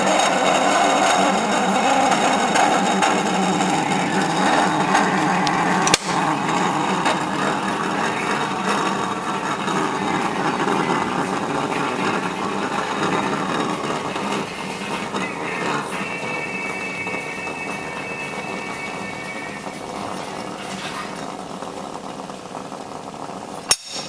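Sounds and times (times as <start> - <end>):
moka pot hissing: 0.0 - 24.0
sharp click: 5.8 - 6.2.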